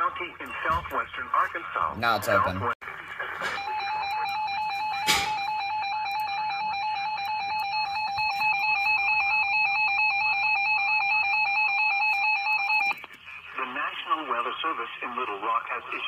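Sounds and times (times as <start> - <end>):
electronic alarm tone: 3.4 - 13.0.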